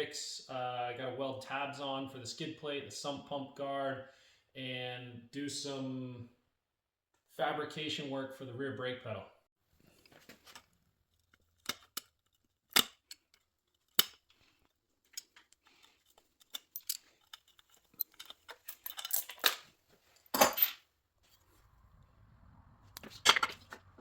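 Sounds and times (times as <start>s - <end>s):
metallic clicks of hand tools: 11.6s - 14.4s.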